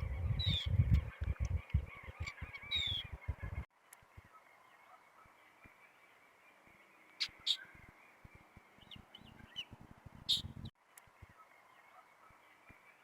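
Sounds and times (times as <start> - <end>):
low thumps and rumble: 0.0 - 3.7
birds calling: 0.0 - 13.0
faint bird chirps: 0.0 - 13.0.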